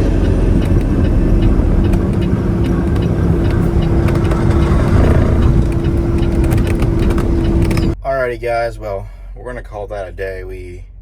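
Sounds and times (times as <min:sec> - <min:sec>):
truck diesel engine rumbling: 0:00.0 - 0:10.9
steady hum: 0:01.9 - 0:08.0.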